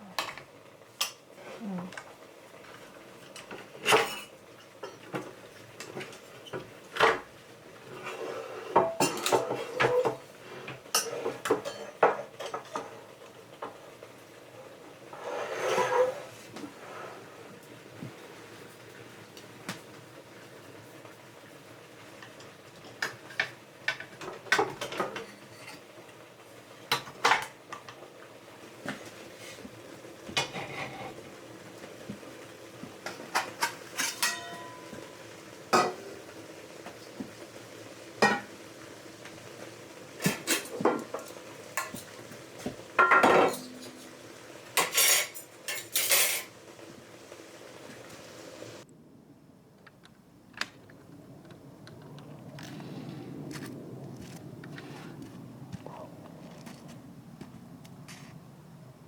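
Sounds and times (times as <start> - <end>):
dishes and utensils clinking: 3.3 - 7.3, 7.9 - 13.1, 15.2 - 16.4, 33.0 - 36.1, 38.2 - 38.5, 40.2 - 44.2, 44.8 - 46.5.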